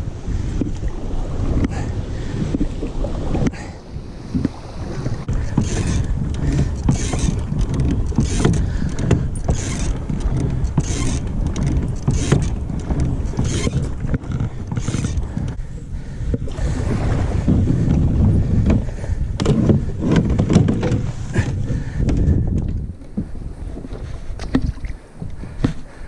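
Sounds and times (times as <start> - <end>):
paddle splashing in water: 0.0 - 26.0
wind rumble on microphone: 0.0 - 26.0.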